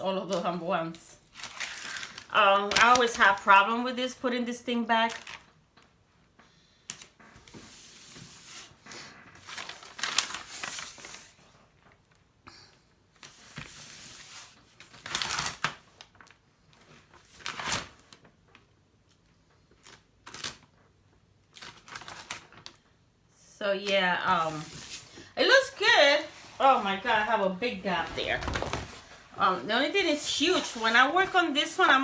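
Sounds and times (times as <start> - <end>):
canvas rustling and crinkling: 8.6 - 11.6, 24.2 - 32.0.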